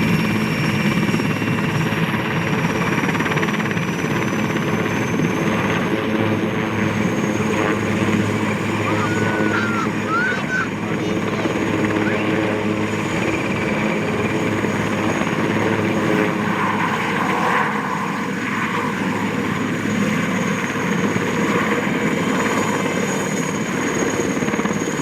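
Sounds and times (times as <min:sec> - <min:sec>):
helicopter engine whine: 0:00.0 - 0:25.0
helicopter rotor beat: 0:00.0 - 0:25.0.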